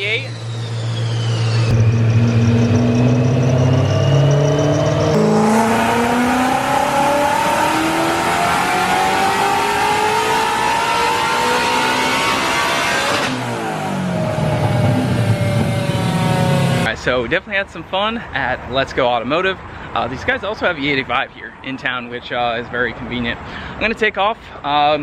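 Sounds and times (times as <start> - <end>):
car engine revving at full throttle: 0.0 - 16.9.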